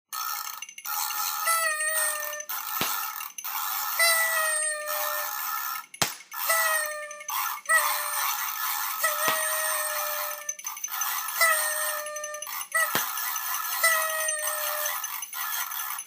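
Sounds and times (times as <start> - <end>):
party horns blowing: 1.2 - 3.0, 3.9 - 10.6, 11.2 - 15.1
party popper pops: 6.0 - 6.6.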